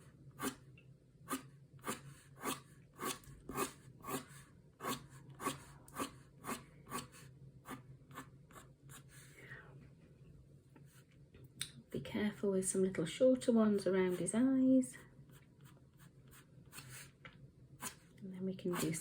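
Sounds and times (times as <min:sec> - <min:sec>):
pen scratching on paper: 0:00.4 - 0:00.6, 0:01.3 - 0:09.2, 0:15.3 - 0:17.2, 0:18.7 - 0:19.0.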